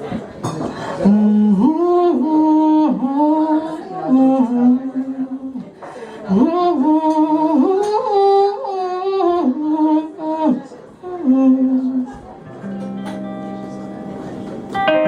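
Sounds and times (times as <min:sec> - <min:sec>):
woman singing: 0:01.0 - 0:05.7, 0:06.3 - 0:12.2.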